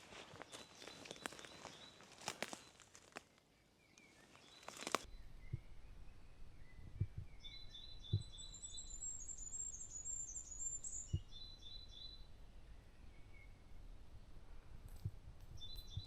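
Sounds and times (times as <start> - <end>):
high thin birdsong: 0.0 - 13.9, 15.0 - 16.0
lower repeated bird notes: 3.8 - 13.9
dull low thumps: 5.1 - 8.7.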